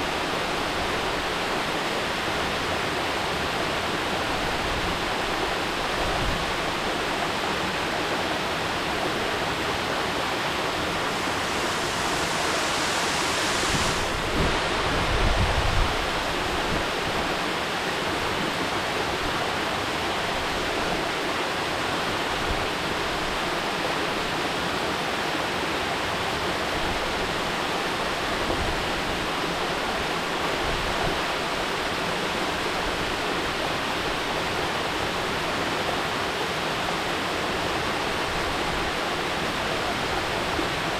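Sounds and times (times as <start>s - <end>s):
waterfall rushing: 0.0s - 30.5s.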